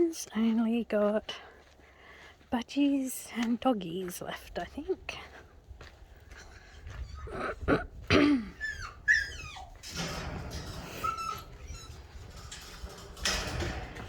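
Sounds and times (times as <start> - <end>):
dogs whining and yelping: 6.9 - 7.6, 8.5 - 12.7.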